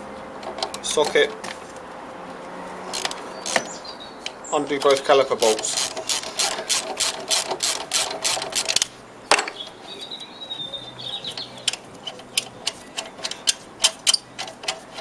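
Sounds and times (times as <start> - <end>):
ratchet wrench clicking: 5.5 - 8.8.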